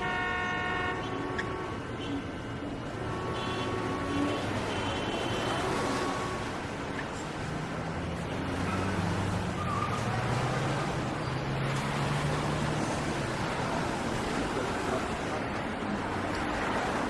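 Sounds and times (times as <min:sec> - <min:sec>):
car horn tone: 0:00.0 - 0:06.5
passing vehicles: 0:00.0 - 0:17.0.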